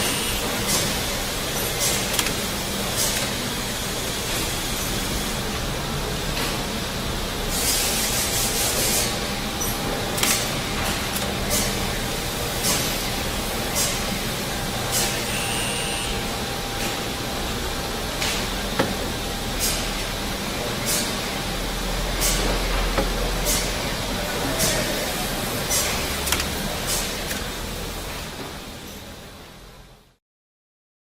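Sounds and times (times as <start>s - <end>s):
sharp knocks and clanks: 18.2s - 20.0s.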